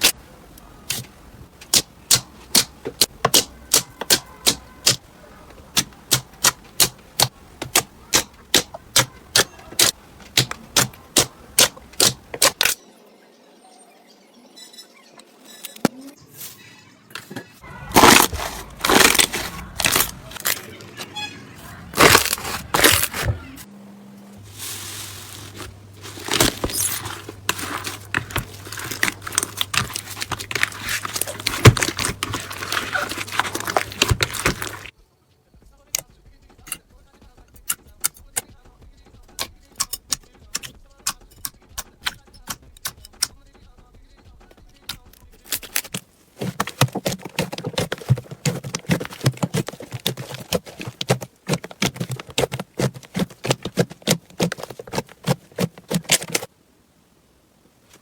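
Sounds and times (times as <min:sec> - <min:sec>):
slime crackling and popping: 0:17.9 - 0:20.6, 0:26.0 - 0:34.9.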